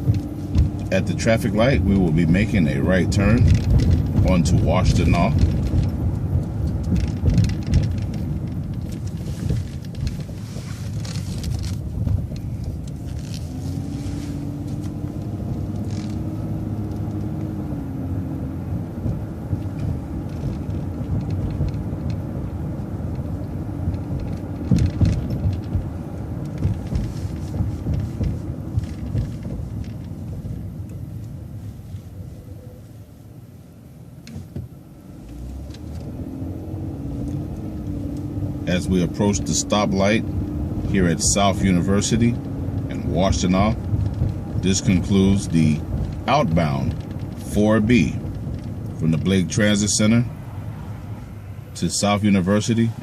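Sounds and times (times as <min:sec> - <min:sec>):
bus engine and road rumble: 0:00.0 - 0:53.0
sharp knocks or rattles: 0:03.4 - 0:10.4, 0:23.9 - 0:30.6.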